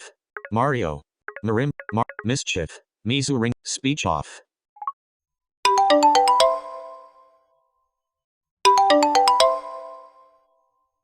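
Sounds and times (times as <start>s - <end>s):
phone ringtone tune: 0.4s - 0.6s, 5.7s - 7.5s, 8.7s - 10.5s.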